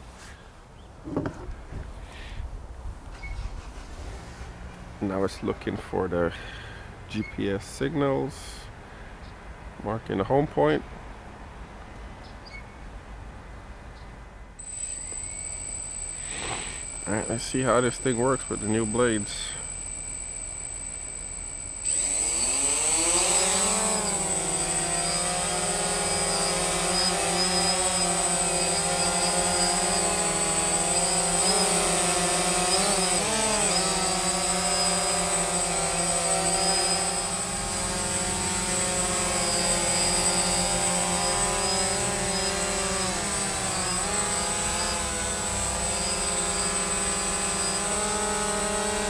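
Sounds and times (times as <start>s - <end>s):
quadcopter motors buzzing: 14.6s - 49.0s.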